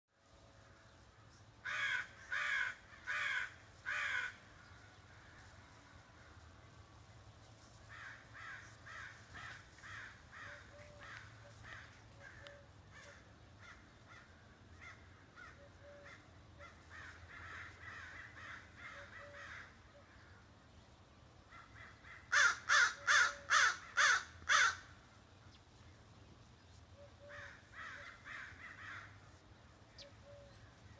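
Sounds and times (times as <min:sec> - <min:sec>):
faint low hum: 0:00.2 - 0:30.9
crow calling: 0:01.6 - 0:05.6, 0:07.8 - 0:20.5, 0:21.5 - 0:25.0, 0:27.0 - 0:30.9.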